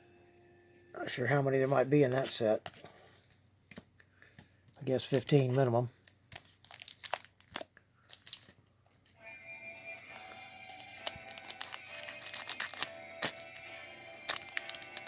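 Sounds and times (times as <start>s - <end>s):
quiet background music: 0.0s - 2.8s, 8.2s - 15.0s
card pack wrapper crinkling: 4.8s - 9.2s, 9.9s - 15.0s.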